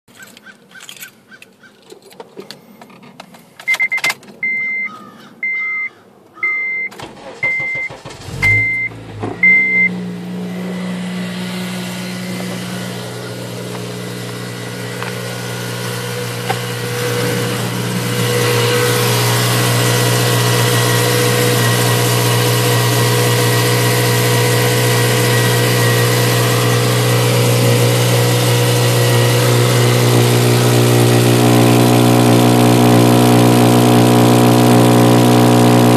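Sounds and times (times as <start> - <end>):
car engine cranking and idling: 0.2 - 35.9
car chime beeps: 3.6 - 10.1.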